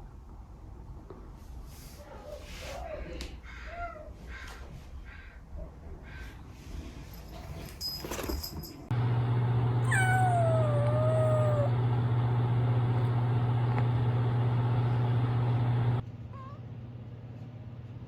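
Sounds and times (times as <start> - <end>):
kitten meowing: 9.8 - 11.7.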